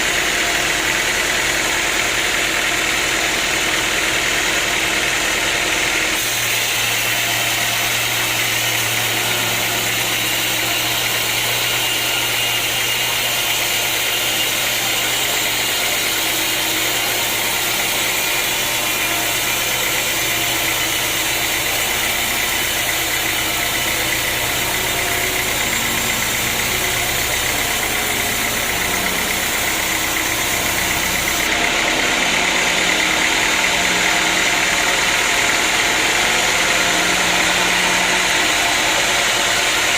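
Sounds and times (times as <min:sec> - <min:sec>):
sawmill machinery drone: 0:00.0 - 0:39.9.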